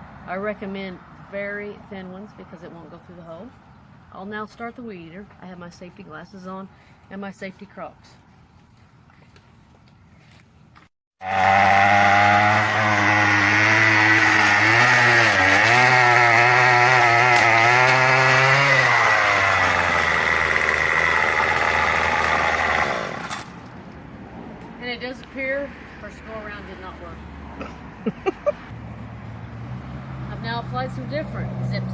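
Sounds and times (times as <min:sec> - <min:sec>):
string trimmer engine running: 0:11.2 - 0:23.7.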